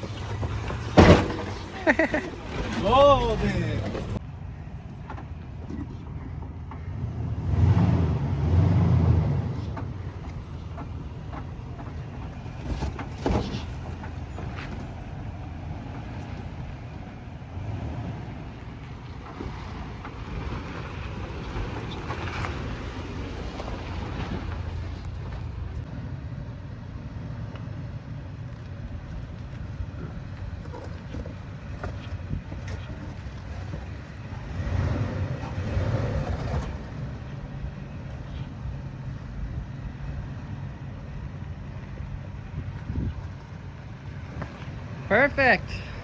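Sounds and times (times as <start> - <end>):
truck engine running low: 0.0 - 46.0
wind buffeting microphone: 28.7 - 45.0.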